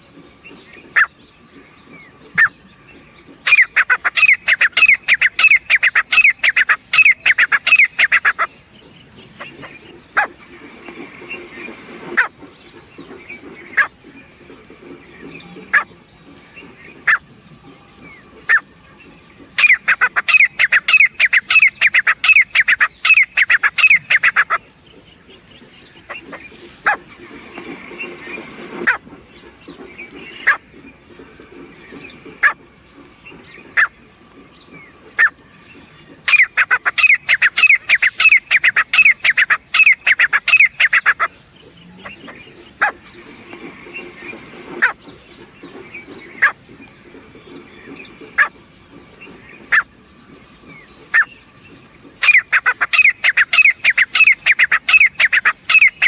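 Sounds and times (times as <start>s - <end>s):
francolin calling: 0.0s - 56.0s.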